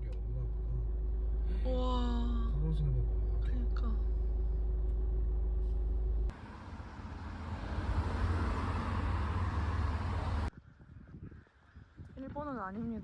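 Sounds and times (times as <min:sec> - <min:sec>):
car low rumble: 0:00.0 - 0:10.5
rushing road noise: 0:04.0 - 0:10.5.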